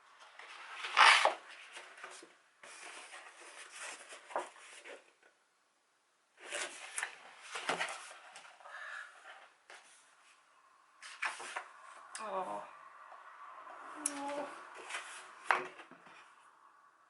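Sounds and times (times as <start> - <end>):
paper pages rustling: 0.3 - 5.1, 6.4 - 8.6, 11.0 - 11.8, 14.8 - 16.2.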